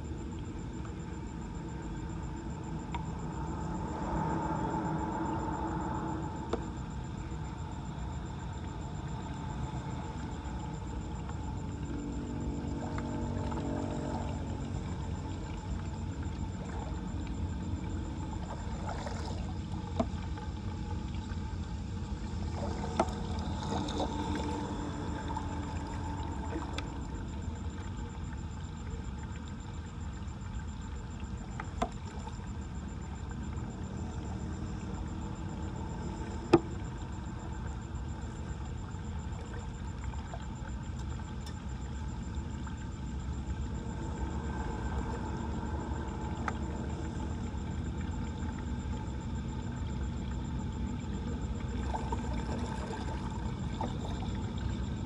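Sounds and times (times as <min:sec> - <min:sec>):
water pouring into drain: 0:51.8 - 0:54.3.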